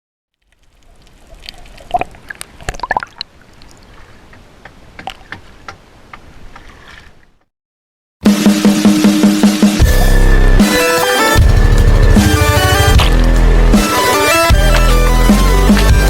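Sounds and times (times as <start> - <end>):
water splashing and sloshing: 0.3 - 7.5
electronic music with steady beat: 9.4 - 16.0.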